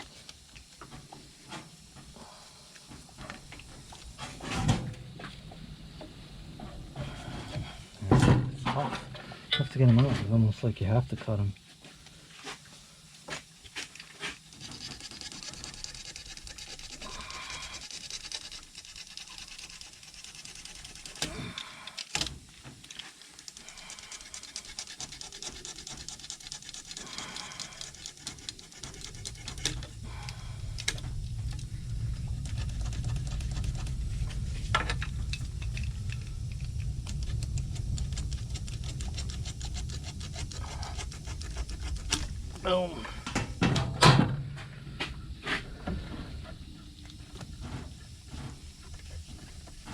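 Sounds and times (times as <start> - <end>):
steady low hum: 0.0 - 49.9
scratchy rasping: 14.1 - 22.2, 23.0 - 34.6, 37.0 - 42.7.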